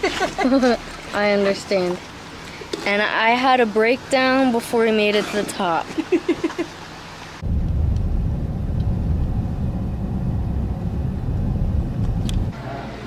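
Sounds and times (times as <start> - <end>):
low noisy rumble: 7.1 - 13.0.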